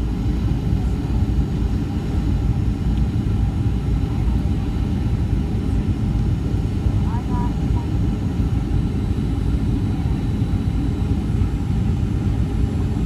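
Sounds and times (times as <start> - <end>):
airplane cabin rumble: 0.0 - 13.0.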